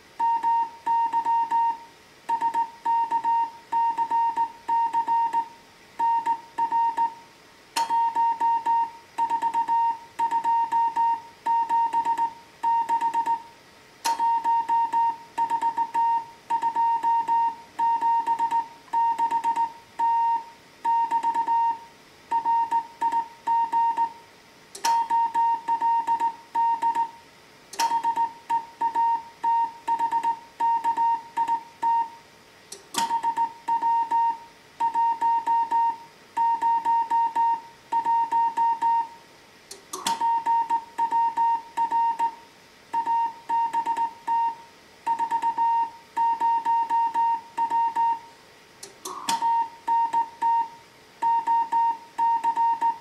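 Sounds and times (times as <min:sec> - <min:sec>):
low receiver hiss: 0:00.0 - 0:53.0
morse code beeps: 0:00.2 - 0:07.2, 0:07.8 - 0:13.5, 0:14.1 - 0:24.2, 0:24.8 - 0:27.2, 0:27.8 - 0:32.2, 0:33.0 - 0:39.2, 0:40.1 - 0:42.4, 0:43.0 - 0:48.3, 0:49.1 - 0:53.0
sharp clicks: 0:24.7 - 0:25.2, 0:27.7 - 0:28.3, 0:32.7 - 0:33.5.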